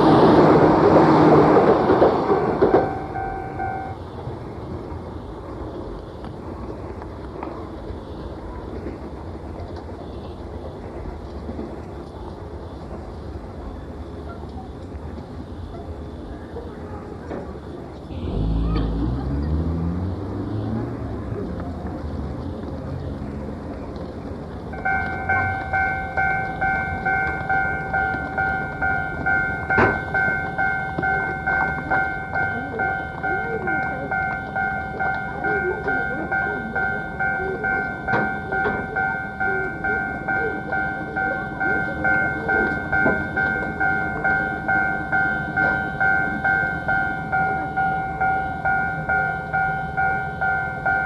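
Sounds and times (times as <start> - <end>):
level crossing alarm ringing: 1.5 - 4.2, 24.7 - 51.0.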